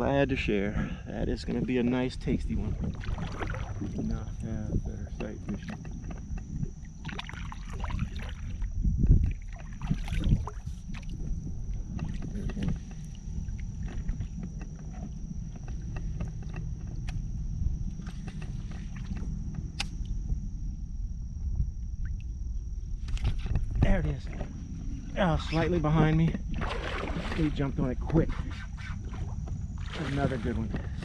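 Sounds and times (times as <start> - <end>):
low water rumble: 0.0 - 31.0
water splashes: 2.6 - 4.4, 6.9 - 11.2, 26.5 - 27.8, 29.1 - 30.8.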